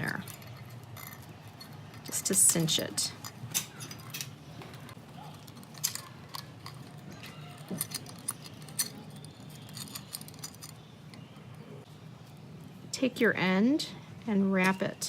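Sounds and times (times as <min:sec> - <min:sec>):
wire and glass beads rattling: 0:00.0 - 0:11.4.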